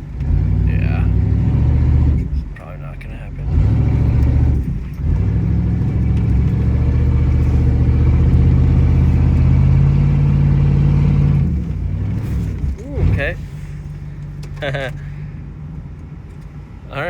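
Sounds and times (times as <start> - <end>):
engine at high revs: 0.0 - 2.4, 3.3 - 14.0.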